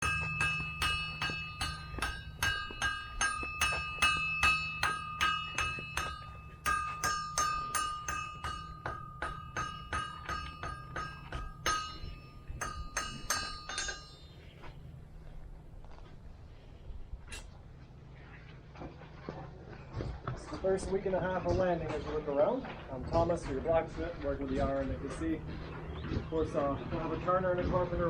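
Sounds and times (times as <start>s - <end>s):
hammer striking iron on anvil: 0.0s - 14.7s.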